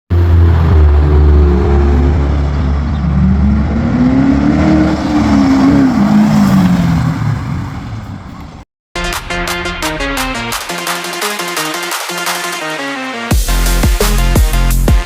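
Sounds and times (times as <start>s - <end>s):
car engine rumbling: 0.1s - 8.7s.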